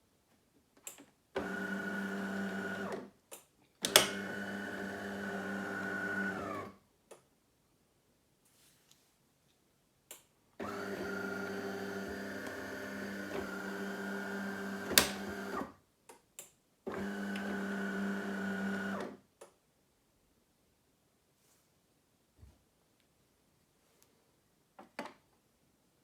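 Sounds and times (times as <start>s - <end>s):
coffee machine humming: 4.1s - 6.6s, 10.6s - 15.6s.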